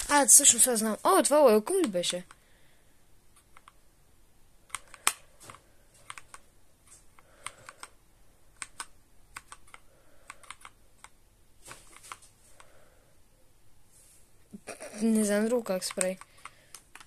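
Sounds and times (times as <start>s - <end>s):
mechanical keyboard keystrokes: 4.7s - 6.4s, 7.3s - 11.2s, 15.8s - 17.0s.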